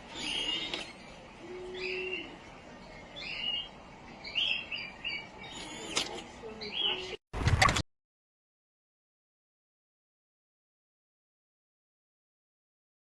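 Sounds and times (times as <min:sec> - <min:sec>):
birds chirping: 0:00.0 - 0:07.6.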